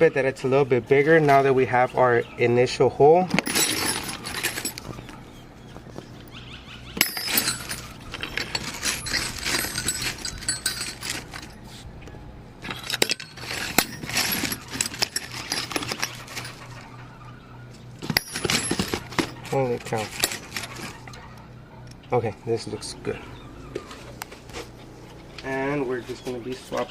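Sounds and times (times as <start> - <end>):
metal drill bits clinking: 3.4 - 5.1, 7.0 - 11.6, 12.6 - 16.9, 18.0 - 21.0.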